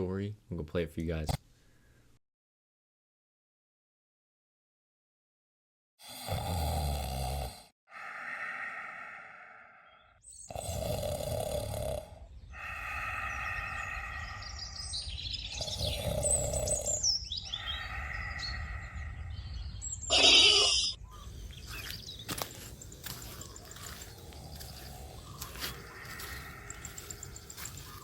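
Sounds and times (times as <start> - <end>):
man snoring: 6.0 - 9.4, 10.5 - 14.1, 15.5 - 17.1
birds chirping: 8.0 - 28.0.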